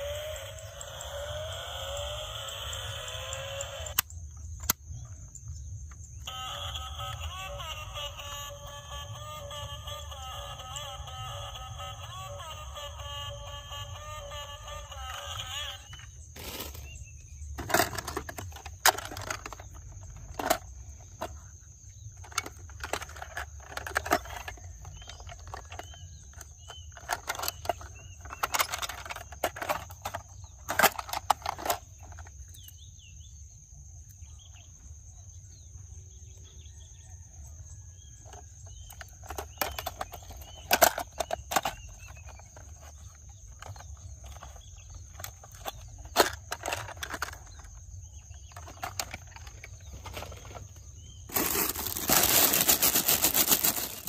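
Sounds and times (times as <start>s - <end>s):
steady high-pitched whine: 0.0s - 7.2s
faint bird chirps: 30.0s - 52.7s.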